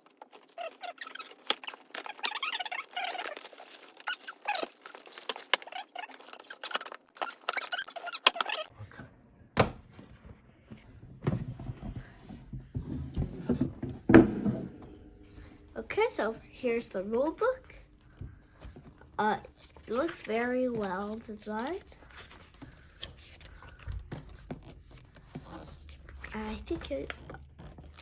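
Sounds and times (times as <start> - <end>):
cardboard box rustling and scraping: 11.2 - 15.4
dull thunk: 14.1 - 15.3.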